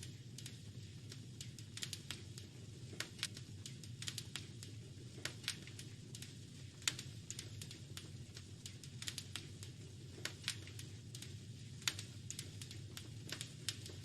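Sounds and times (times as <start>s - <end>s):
fire pops and snaps: 0.0s - 14.0s
low steady rush of fire: 0.0s - 14.0s.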